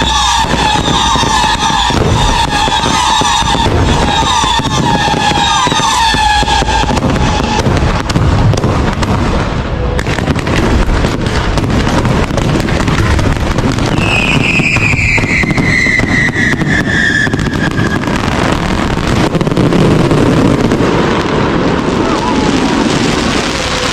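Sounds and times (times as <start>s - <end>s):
falling firework whistle: 0.0s - 9.1s, 11.6s - 23.9s
fireworks crackling and banging: 0.0s - 23.9s.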